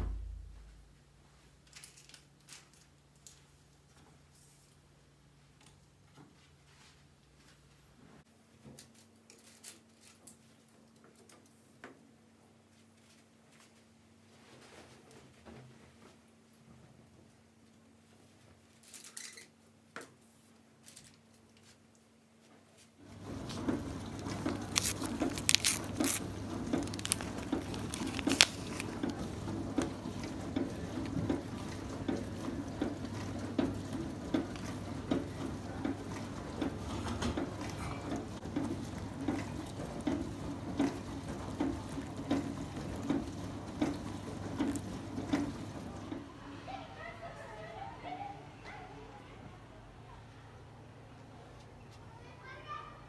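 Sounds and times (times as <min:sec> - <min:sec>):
scrubbing: 0:23.1 - 0:46.2
running water: 0:23.1 - 0:46.3.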